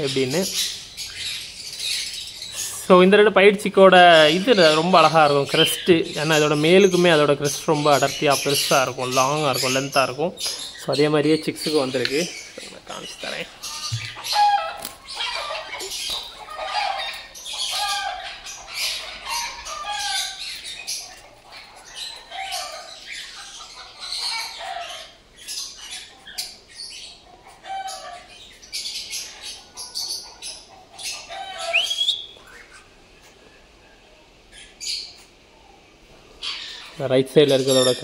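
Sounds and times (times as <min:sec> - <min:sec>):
young cockatiels squawking: 0:04.0 - 0:33.4, 0:36.3 - 0:38.0
wings flapping and rustling: 0:13.9 - 0:15.2.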